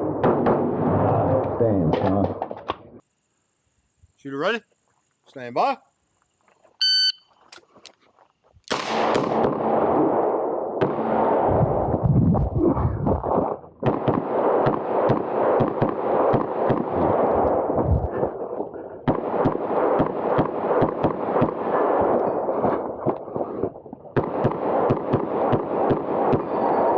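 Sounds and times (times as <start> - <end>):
pistol shots with echo: 8.7 - 11.7, 13.8 - 26.9.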